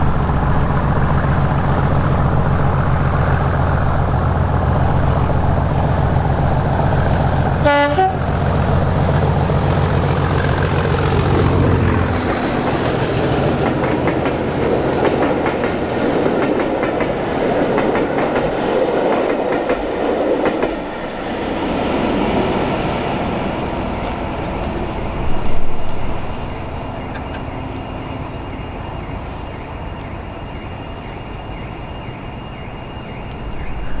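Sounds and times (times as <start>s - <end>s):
diesel locomotive engine throb: 0.0s - 18.6s, 20.8s - 34.0s
train horn blast: 7.6s - 8.4s
train wheels clattering past: 9.1s - 31.1s.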